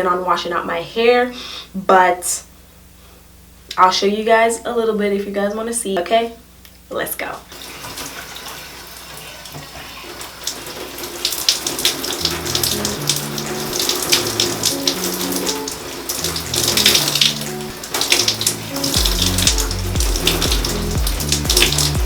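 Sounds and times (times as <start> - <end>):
shower water splashing: 7.5 - 22.0
background music with bass: 12.2 - 22.0.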